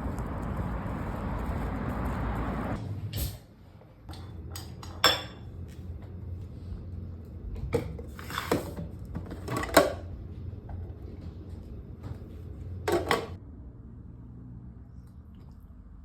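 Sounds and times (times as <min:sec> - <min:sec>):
dishes clinking and knocking: 0:04.1 - 0:05.5, 0:07.7 - 0:10.1, 0:12.8 - 0:13.4.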